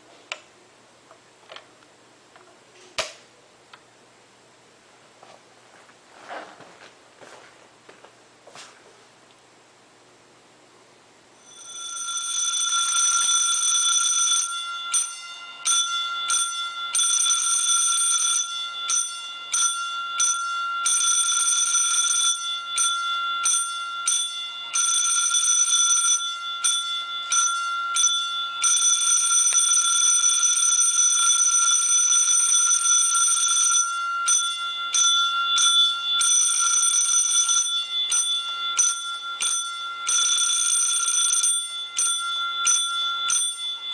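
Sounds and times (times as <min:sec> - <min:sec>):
fire alarm bell ringing: 0:11.4 - 0:43.9.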